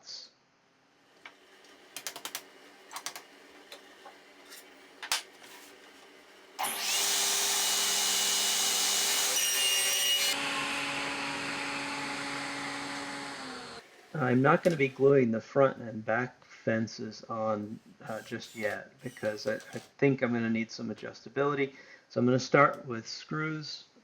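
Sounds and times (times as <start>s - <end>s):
electric power tool running: 6.4s - 15.1s, 18.0s - 19.9s.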